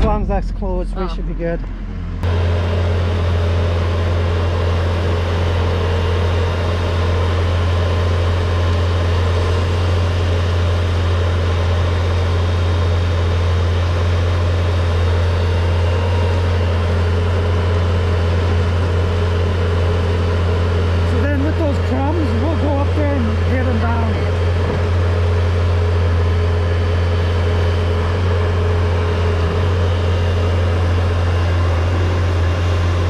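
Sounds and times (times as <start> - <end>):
vehicle engine running: 0.0 - 33.0.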